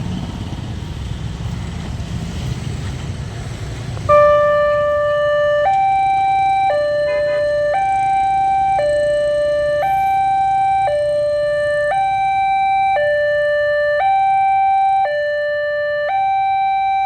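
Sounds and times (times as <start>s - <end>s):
two-tone locomotive horn: 4.1s - 5.2s, 6.8s - 7.8s.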